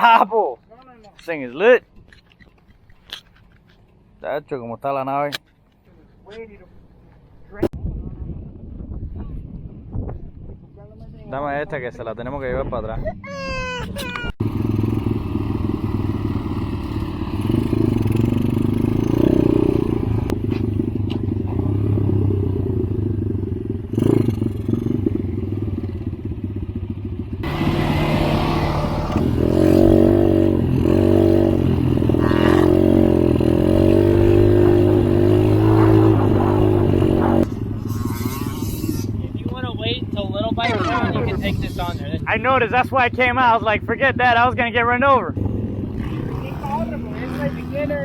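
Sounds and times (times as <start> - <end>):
off-road engines running: 0.0 - 7.8, 10.6 - 48.0
engine revving: 14.4 - 26.4, 27.0 - 44.6, 45.3 - 48.0.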